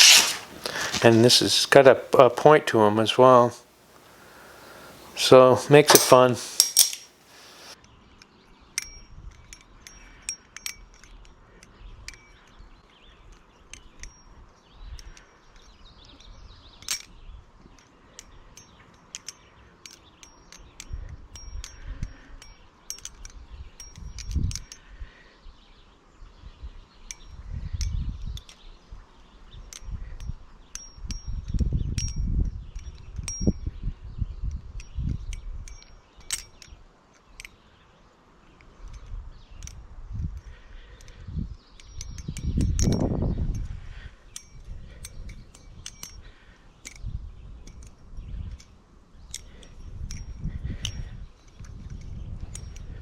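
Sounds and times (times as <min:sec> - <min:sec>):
butterfly knife metal clicks: 0:05.9 - 0:12.4, 0:34.5 - 0:37.6, 0:41.8 - 0:43.0, 0:44.3 - 0:52.9.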